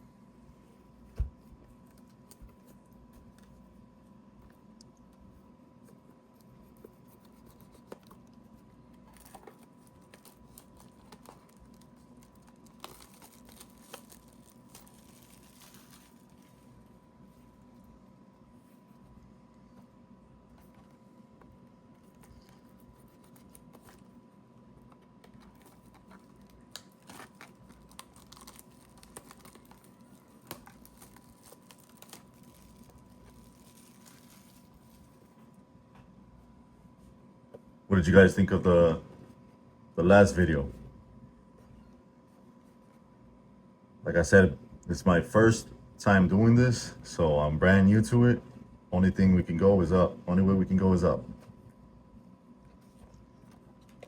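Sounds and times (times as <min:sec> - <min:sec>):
faint steady hum: 0:00.0 - 0:54.0
packaging crinkling and tearing: 0:06.8 - 0:16.9, 0:22.2 - 0:24.1, 0:24.8 - 0:35.4.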